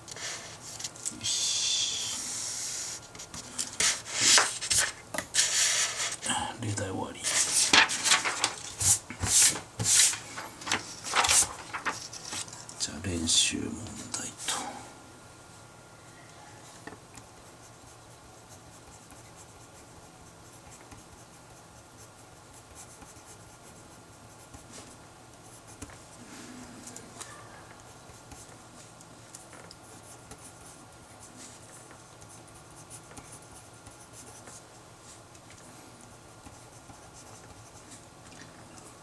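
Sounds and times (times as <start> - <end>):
pen scratching on paper: 2.4 - 6.3.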